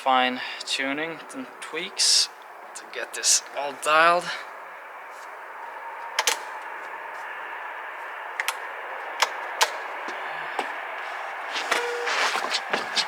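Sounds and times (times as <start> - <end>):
bike clicks and taps: 6.0 - 6.7, 8.4 - 10.8.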